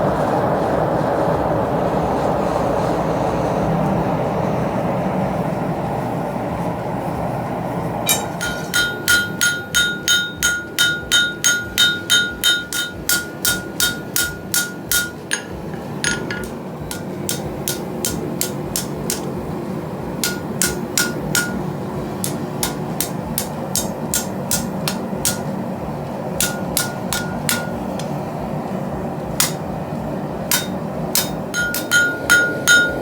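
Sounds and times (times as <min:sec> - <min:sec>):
steady rushing noise: 0:00.0 - 0:33.0
hammer ringing on anvil: 0:08.1 - 0:19.5, 0:20.1 - 0:25.6, 0:26.4 - 0:28.2, 0:29.4 - 0:29.7, 0:30.5 - 0:33.0.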